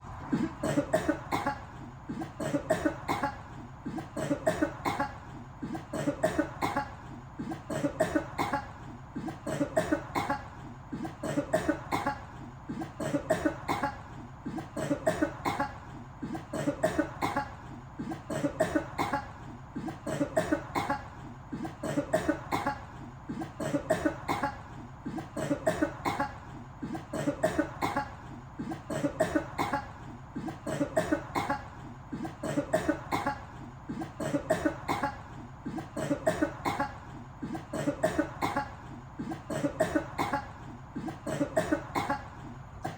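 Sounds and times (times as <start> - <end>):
person coughing: 0.2 - 42.9.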